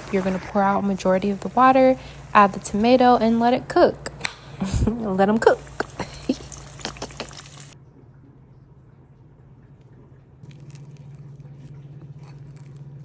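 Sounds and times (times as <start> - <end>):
low steady hum: 0.0 - 13.0
stew bubbling in a pot: 4.0 - 7.8.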